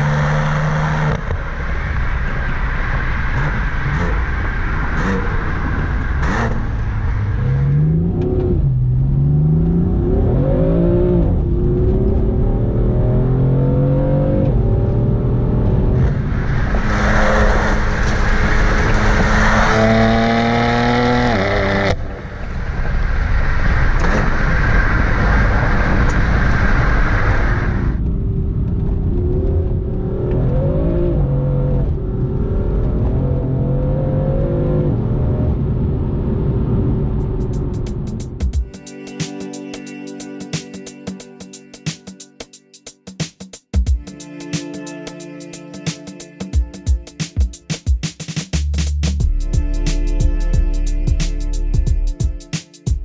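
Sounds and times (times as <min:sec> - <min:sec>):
car engine revving: 0:00.0 - 0:38.4.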